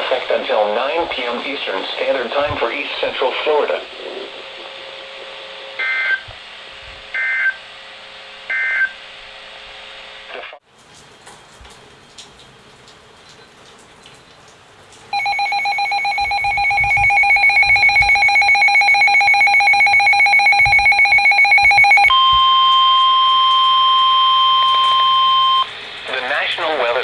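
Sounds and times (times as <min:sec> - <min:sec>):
steady warning alarm tone: 0:05.8 - 0:06.3, 0:07.1 - 0:07.6, 0:08.5 - 0:09.0, 0:15.1 - 0:25.7
pulsing electronic alarm tone: 0:15.1 - 0:25.7.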